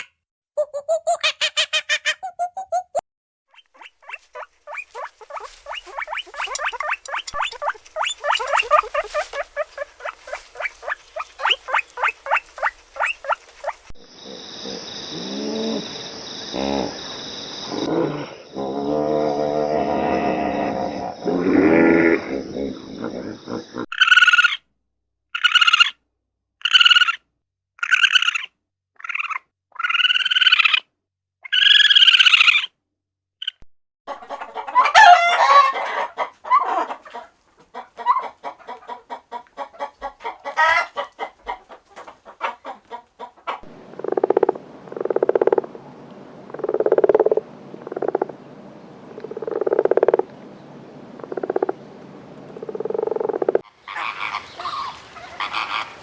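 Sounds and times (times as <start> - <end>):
low croaking calls: 3.6 - 24.6, 39.7 - 56.0
jumble of calls and clicks: 4.7 - 13.9.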